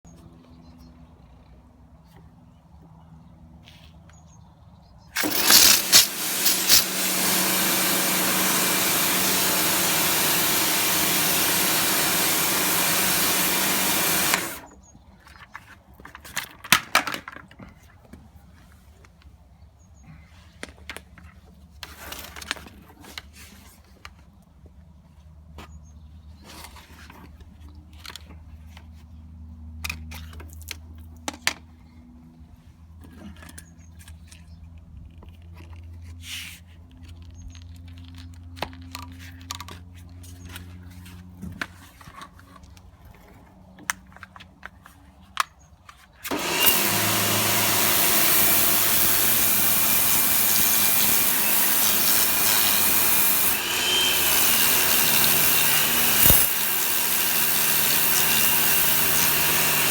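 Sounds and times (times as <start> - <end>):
pressure washer hissing: 5.2 - 14.7, 46.3 - 59.9.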